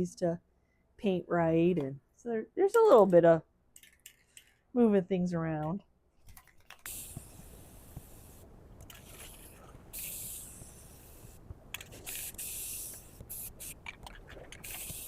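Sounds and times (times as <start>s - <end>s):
aerosol spray can hissing: 6.9s - 13.9s, 14.6s - 15.0s.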